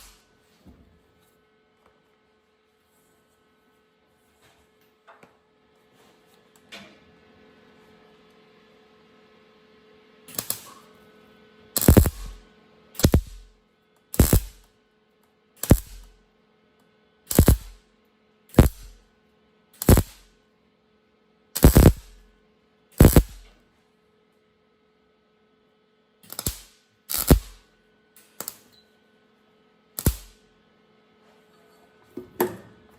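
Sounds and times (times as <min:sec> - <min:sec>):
welding arc crackling: 0:10.3 - 0:10.7, 0:11.8 - 0:12.4, 0:13.0 - 0:13.5, 0:14.2 - 0:14.6, 0:15.6 - 0:16.1, 0:17.3 - 0:17.8, 0:18.5 - 0:19.0, 0:19.8 - 0:20.3, 0:21.6 - 0:22.2, 0:23.0 - 0:23.4, 0:26.3 - 0:27.6, 0:30.0 - 0:30.4
welder humming: 0:11.8 - 0:12.4, 0:13.0 - 0:13.5, 0:14.2 - 0:14.6, 0:15.6 - 0:16.1, 0:17.3 - 0:17.8, 0:18.5 - 0:19.0, 0:19.8 - 0:20.2, 0:21.6 - 0:22.2, 0:23.0 - 0:23.4, 0:26.3 - 0:27.6, 0:30.0 - 0:30.4.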